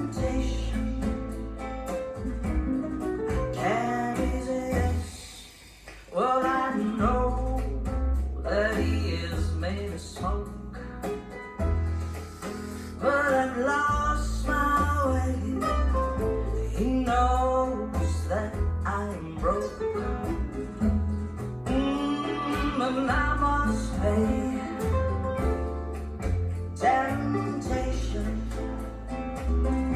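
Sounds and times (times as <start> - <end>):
person singing: 0.0 - 1.6, 3.5 - 10.6, 12.3 - 25.6, 26.7 - 29.9
deep bass notes: 0.0 - 5.2, 7.0 - 29.9
guitar: 0.0 - 29.9
steady percussion: 0.0 - 29.9
song over loudspeakers: 21.7 - 25.4, 26.6 - 28.8.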